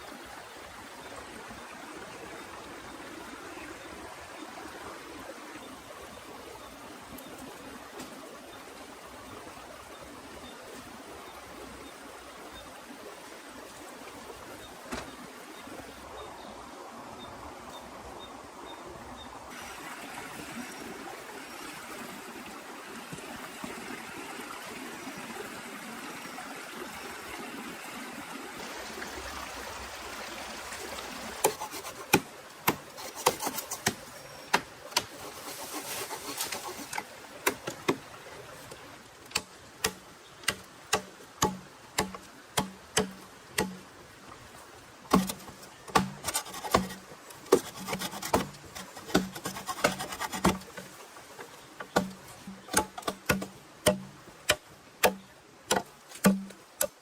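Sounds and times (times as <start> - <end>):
sharp wooden knocks: 39.3 - 43.8, 45.1 - 50.8, 51.9 - 57.0.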